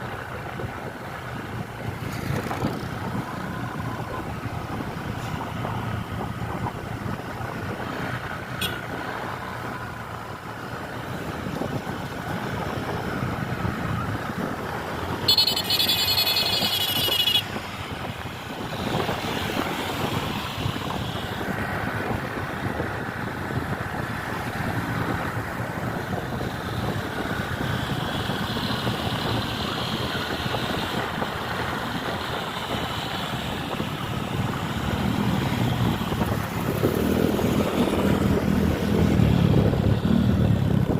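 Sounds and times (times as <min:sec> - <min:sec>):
road traffic: 0:00.0 - 0:40.9
high-pitched bus horn: 0:15.3 - 0:17.4.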